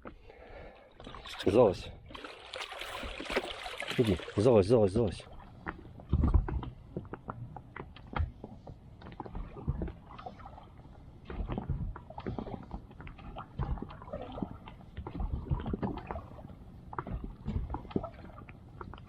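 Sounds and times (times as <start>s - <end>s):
knocks and thuds on inflatable boat: 5.7s - 7.4s, 8.1s - 10.5s, 11.2s - 19.0s.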